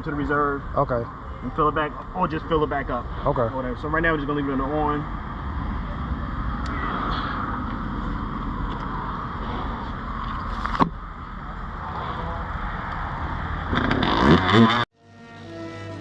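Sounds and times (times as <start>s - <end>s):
dirt bike engine revving: 13.3s - 16.0s.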